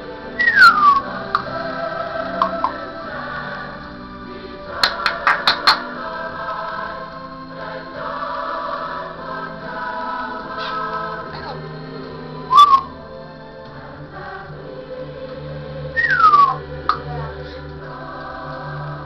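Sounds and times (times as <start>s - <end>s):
music with singing: 0.0s - 19.0s
parrot whistle: 0.4s - 1.2s, 12.5s - 13.0s, 16.0s - 16.6s.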